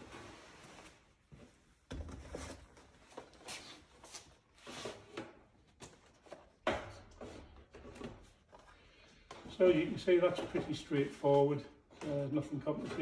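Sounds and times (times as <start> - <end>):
boxes knocking and scraping: 11.9 - 13.0.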